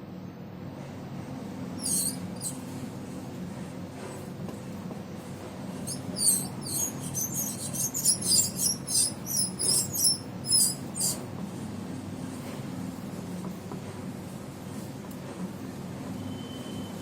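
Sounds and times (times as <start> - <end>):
ball bearing squealing: 1.8 - 2.6, 5.8 - 11.2
cooler motor humming: 5.8 - 11.3.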